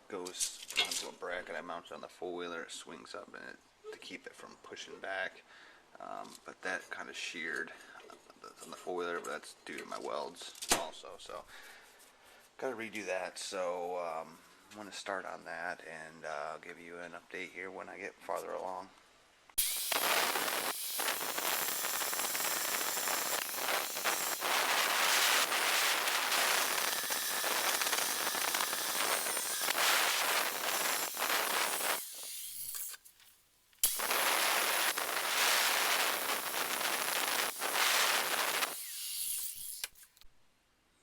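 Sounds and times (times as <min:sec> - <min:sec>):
angle grinder cutting steel: 0:19.6 - 0:33.1, 0:33.8 - 0:40.2.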